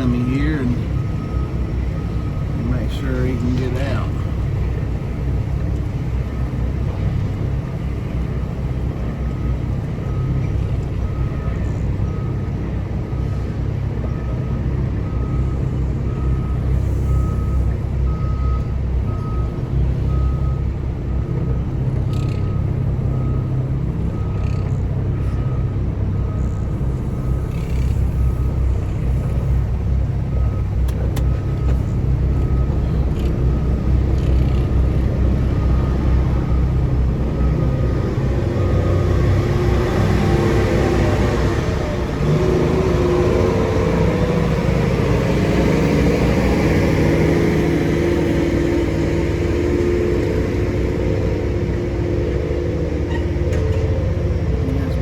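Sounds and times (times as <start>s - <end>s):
diesel truck engine idling: 0.0s - 55.0s
backup alarm beeping: 27.2s - 55.0s.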